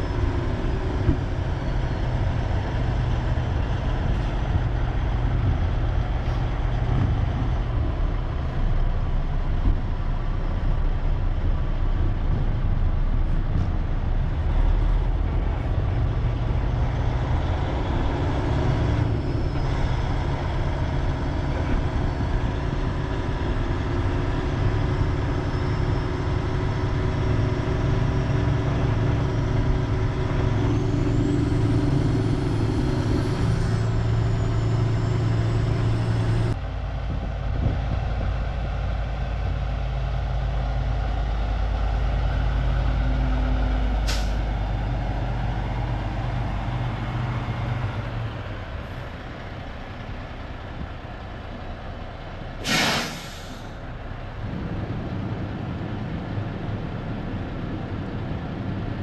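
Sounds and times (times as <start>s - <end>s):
diesel truck engine running: 0.0s - 59.0s
air brake hiss: 44.0s - 44.5s, 52.6s - 53.8s.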